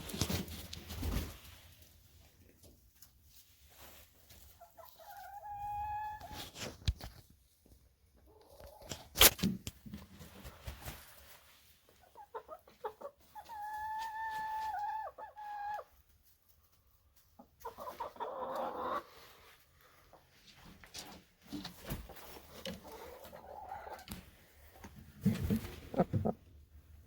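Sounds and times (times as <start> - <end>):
chickens clucking and calling: 3.9 - 6.6, 11.9 - 16.1, 16.9 - 20.3, 20.9 - 26.7.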